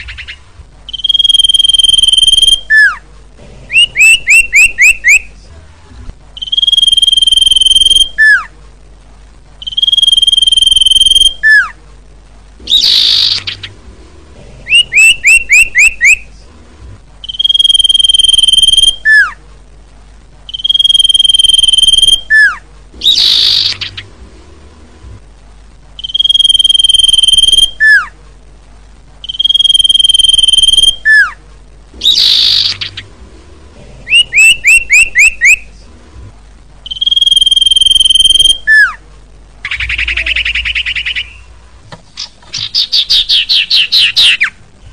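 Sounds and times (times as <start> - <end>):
bird chirps and whistle: 0.0 - 3.0, 3.7 - 5.3, 6.4 - 8.5, 9.6 - 11.8, 12.7 - 13.7, 14.7 - 16.3, 17.2 - 19.4, 20.5 - 24.0, 26.0 - 28.1, 29.2 - 31.4, 32.0 - 33.0, 34.1 - 35.7, 36.8 - 39.0, 39.6 - 41.5, 42.2 - 44.6.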